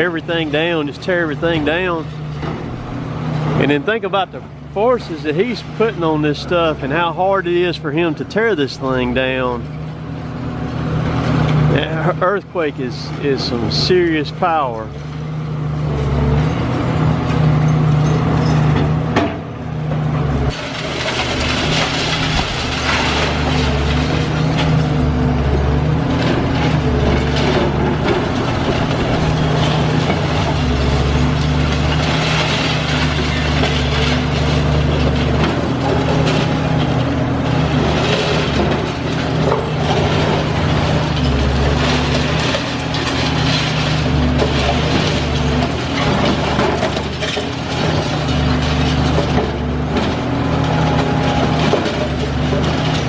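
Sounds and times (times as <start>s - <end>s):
concrete debris crunching: 0.0s - 53.0s
excavator diesel engine: 0.0s - 53.0s.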